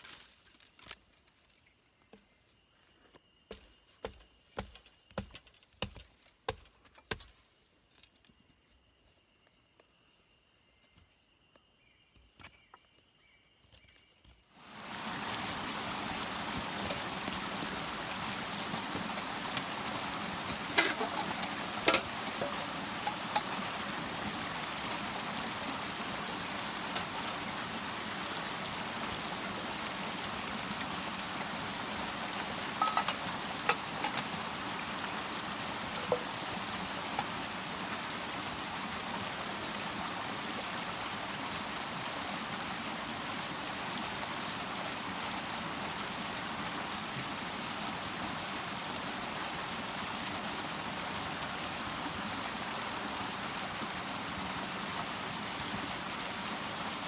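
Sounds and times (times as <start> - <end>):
rushing water: 14.6 - 57.0.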